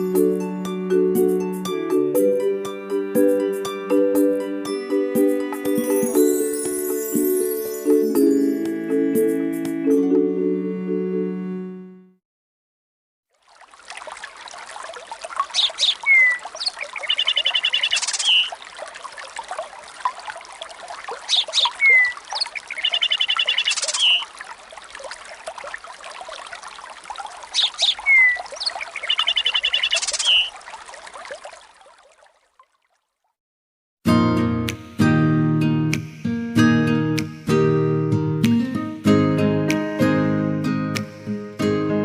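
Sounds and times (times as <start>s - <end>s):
trickling water: 13.3s - 33.4s
bird chirps and trill: 15.5s - 18.6s, 21.2s - 24.3s, 27.5s - 30.5s.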